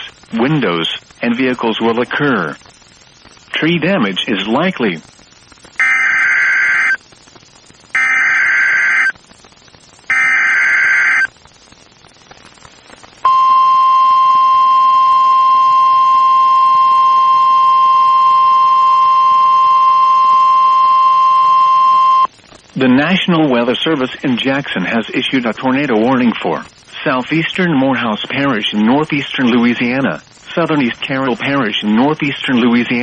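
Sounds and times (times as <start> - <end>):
steady warning alarm tone: 5.8 - 7.0, 8.0 - 9.1, 10.1 - 11.3, 13.3 - 22.3
data bursts: 5.8 - 7.1, 7.9 - 9.2, 10.1 - 11.3, 13.2 - 22.3.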